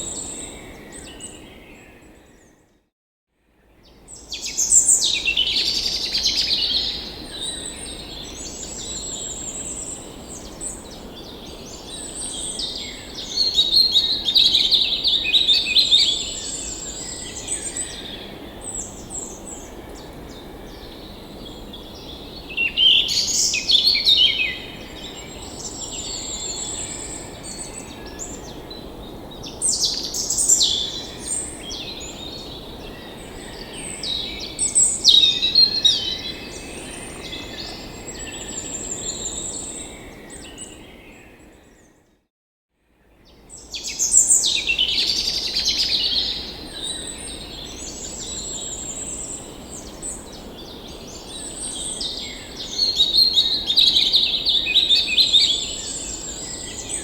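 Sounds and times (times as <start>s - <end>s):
songbirds chirping and trilling: 43.1s - 57.0s.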